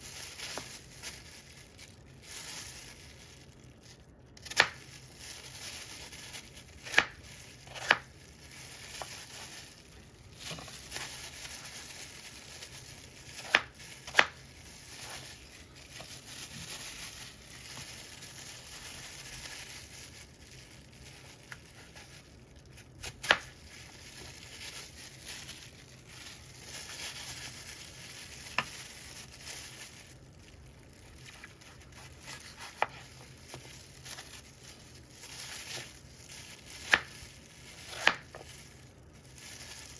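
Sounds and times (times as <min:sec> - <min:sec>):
knife cutting through apple: 0:07.7 - 0:08.0, 0:37.8 - 0:38.2.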